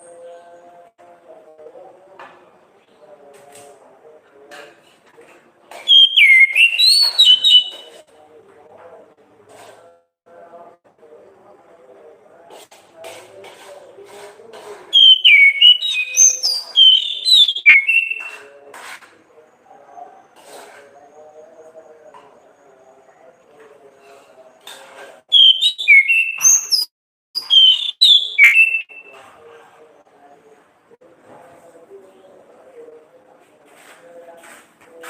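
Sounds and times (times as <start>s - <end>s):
thrush whistled song: 5.8s - 8.0s, 14.9s - 18.4s, 25.3s - 29.2s.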